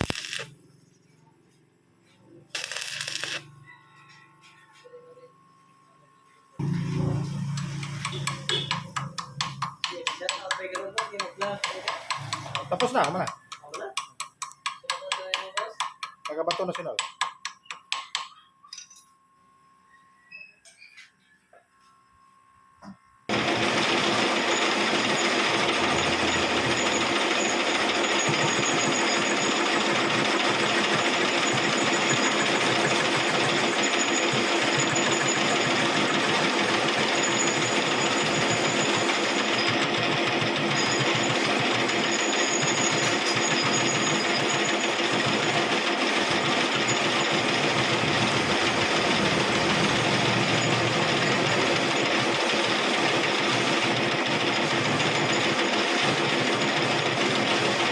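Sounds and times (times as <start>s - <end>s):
arc welding crackling hiss: 0.0s - 0.6s, 2.6s - 3.5s.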